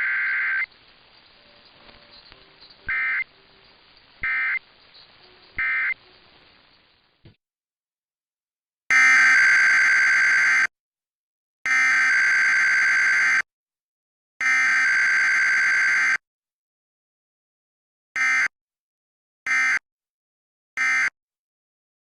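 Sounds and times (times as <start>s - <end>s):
harsh digital data buzzing: 0.0s - 7.1s.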